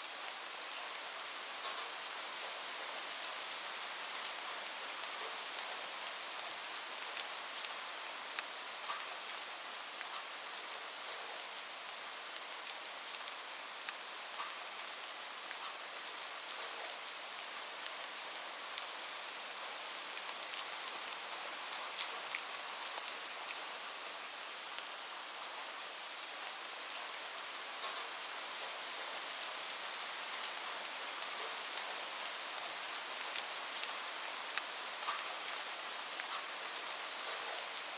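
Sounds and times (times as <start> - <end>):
steady rain hiss: 0.0 - 37.9
rain drop ticks: 34.6 - 35.6.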